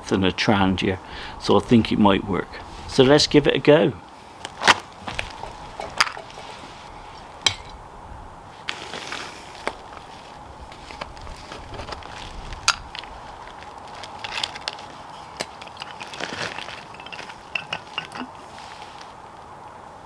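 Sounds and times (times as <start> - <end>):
small metal parts clinking: 14.3 - 18.4.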